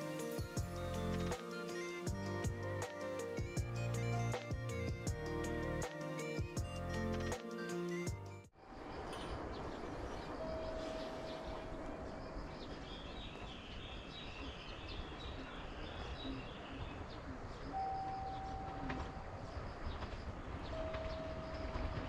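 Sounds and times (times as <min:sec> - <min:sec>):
birds chirping: 0:08.8 - 0:22.0.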